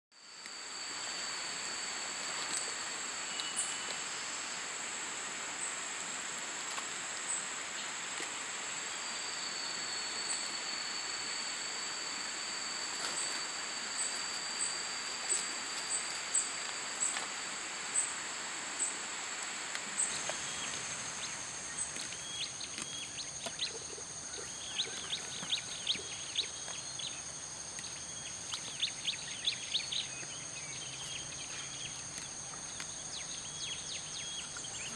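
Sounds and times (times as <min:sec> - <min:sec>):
high-pitched insect chorus: 0:00.2 - 0:34.9.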